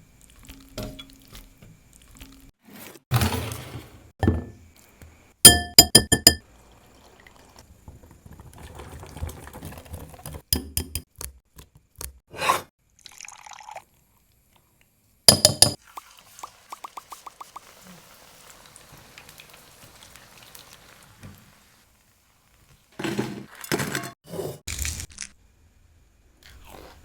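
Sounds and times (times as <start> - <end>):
ringing kitchen clinks: 5.5 - 6.4, 15.3 - 15.8.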